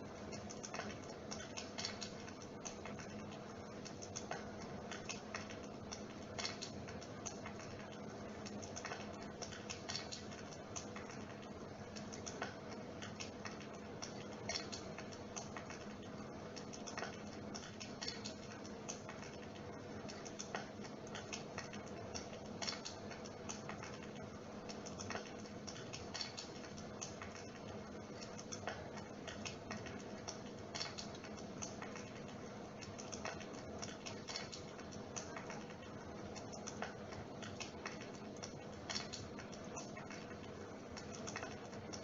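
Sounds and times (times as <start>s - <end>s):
faint steady hum: 0.0s - 42.0s
light clicks and ticks: 0.0s - 42.0s.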